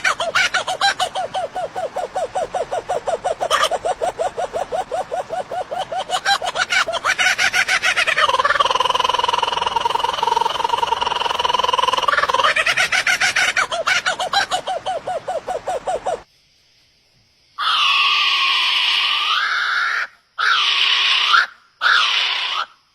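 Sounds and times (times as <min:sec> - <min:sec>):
bird calling repeated notes: 0:00.0 - 0:16.2.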